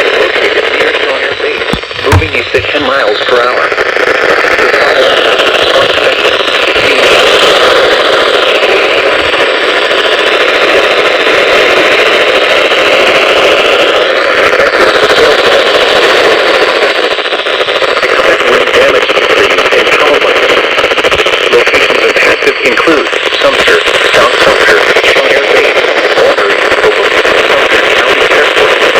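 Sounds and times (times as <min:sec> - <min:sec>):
radio static: 0:00.0 - 0:03.8, 0:04.8 - 0:09.6, 0:21.5 - 0:28.7.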